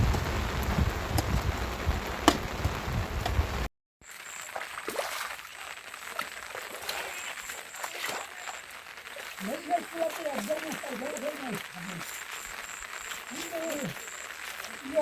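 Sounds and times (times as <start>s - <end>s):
heavy rain falling: 0.0s - 3.7s, 5.5s - 15.0s
water drips and ticks: 0.0s - 15.0s.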